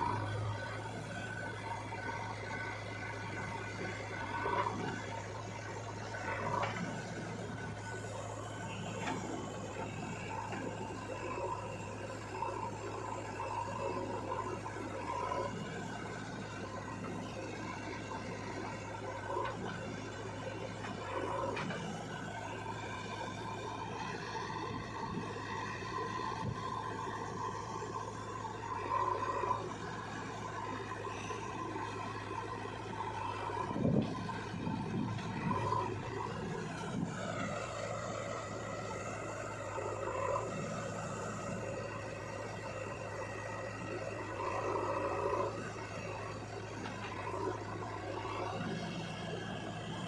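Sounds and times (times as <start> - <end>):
diesel engine running: 0.0 - 50.0
high engine whine: 0.0 - 50.0.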